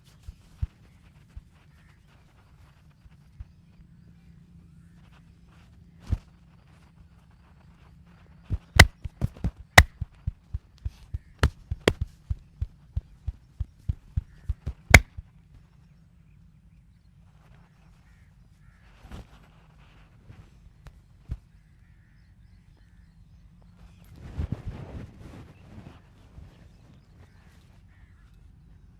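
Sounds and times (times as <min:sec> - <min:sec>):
percussive massage strikes: 0:08.8 - 0:09.1, 0:09.8 - 0:10.4, 0:13.0 - 0:15.1.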